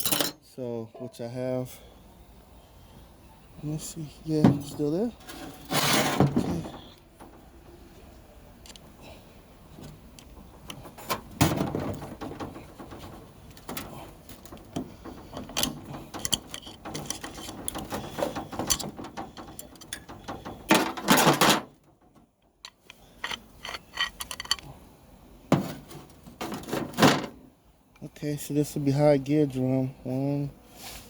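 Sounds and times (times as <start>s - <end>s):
metal parts clicking and clattering: 0.0s - 0.4s, 10.1s - 24.7s.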